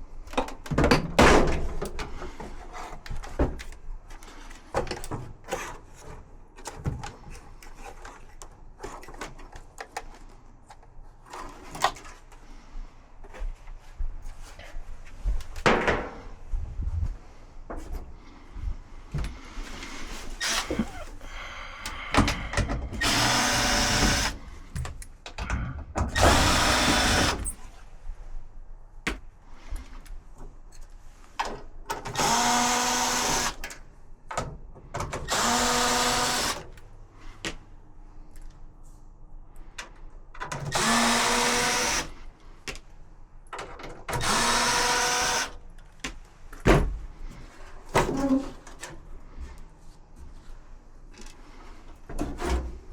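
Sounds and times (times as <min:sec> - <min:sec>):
power drill whining: 0:20.0 - 0:24.5, 0:26.2 - 0:27.6, 0:32.1 - 0:33.7, 0:35.3 - 0:36.6, 0:40.7 - 0:42.1, 0:44.2 - 0:45.6.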